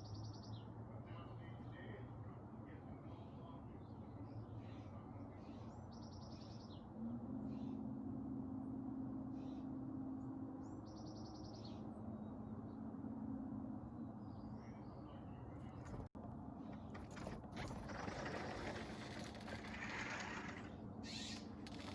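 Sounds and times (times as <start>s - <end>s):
birds chirping: 14.2s - 21.9s
rapid rattling bird calls: 16.7s - 21.9s.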